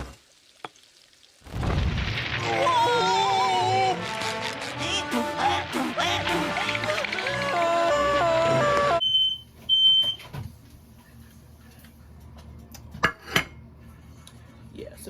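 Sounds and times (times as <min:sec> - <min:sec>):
background music: 0:02.5 - 0:09.0
smoke alarm beeps: 0:09.0 - 0:10.3.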